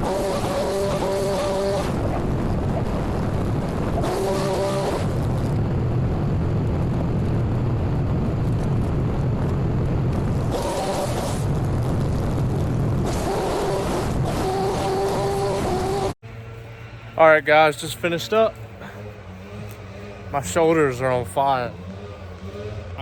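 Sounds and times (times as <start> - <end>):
small petrol engine running: 0.0 - 6.6, 13.0 - 23.0.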